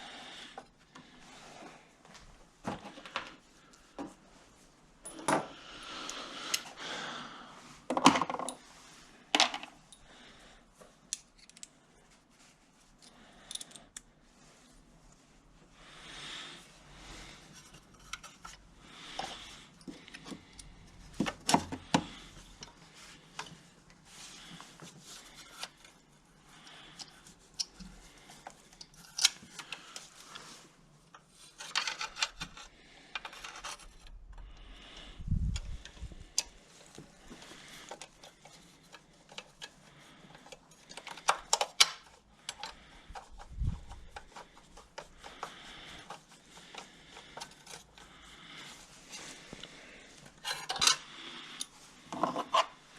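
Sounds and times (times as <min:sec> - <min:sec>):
tools clicking and scraping: 0:11.0 - 0:11.8, 0:13.0 - 0:14.1, 0:17.4 - 0:34.6, 0:35.4 - 0:52.8.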